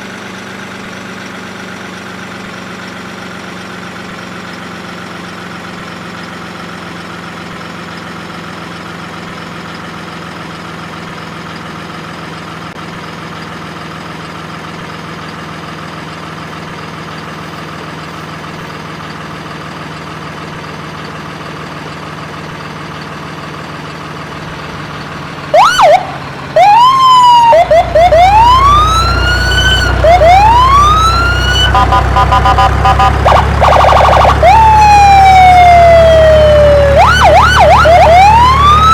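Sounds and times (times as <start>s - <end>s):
toy siren wailing: 25.5s - 38.9s.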